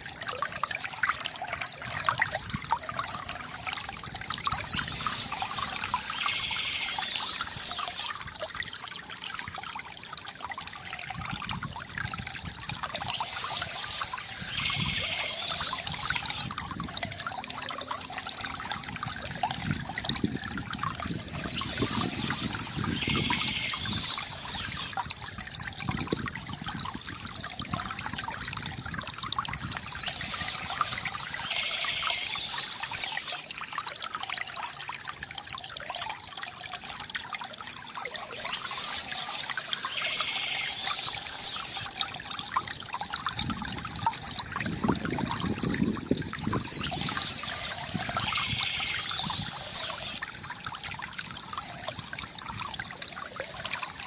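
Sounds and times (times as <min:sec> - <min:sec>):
stream babbling over stones: 0:00.0 - 0:54.0.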